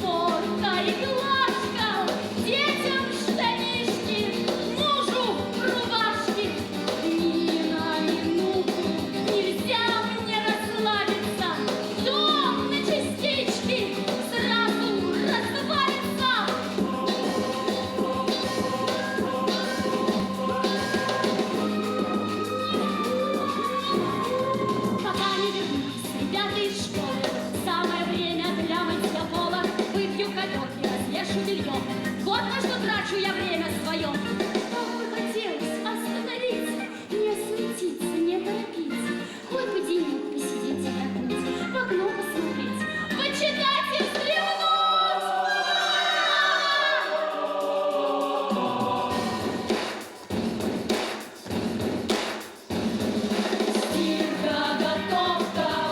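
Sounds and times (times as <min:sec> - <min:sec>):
band accompaniment: 0:00.0 - 0:36.5, 0:48.1 - 0:55.9
person singing with vibrato: 0:00.0 - 0:49.8, 0:53.9 - 0:55.9
choir singing long notes: 0:16.6 - 0:25.5, 0:44.4 - 0:50.0.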